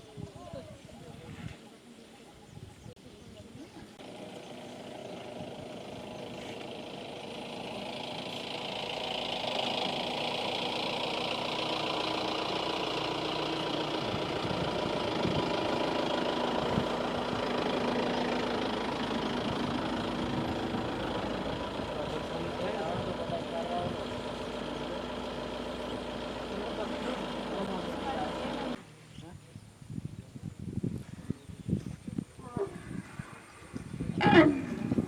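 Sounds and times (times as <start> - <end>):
vehicle engine running: 3.8 - 29.0, 33.7 - 35.0.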